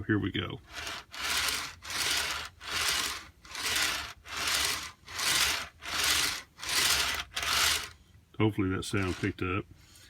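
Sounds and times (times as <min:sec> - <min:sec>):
toy train wheels rolling on rails: 0:00.7 - 0:08.0, 0:08.9 - 0:09.4.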